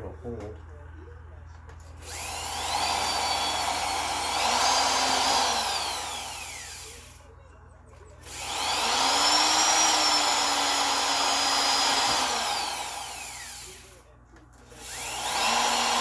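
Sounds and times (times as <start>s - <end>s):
electric drill motor whining: 2.0s - 7.2s, 8.2s - 14.0s, 14.7s - 16.0s.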